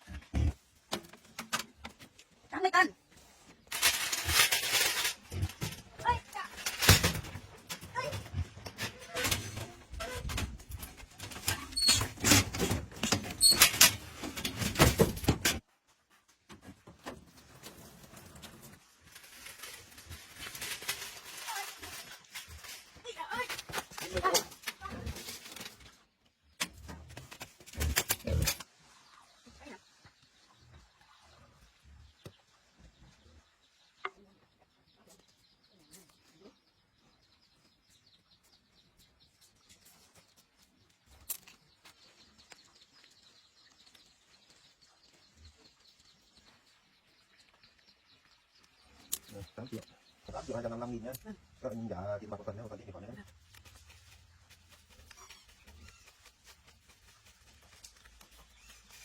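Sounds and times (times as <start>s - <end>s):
pigs squeaking: 7.8s - 14.8s, 52.5s - 59.0s.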